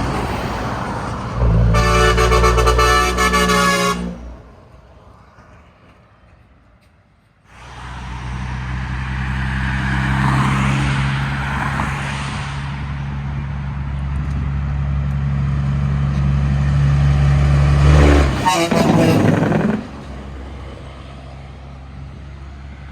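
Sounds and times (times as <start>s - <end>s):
truck diesel engine droning: 0.0s - 4.9s, 12.8s - 22.9s.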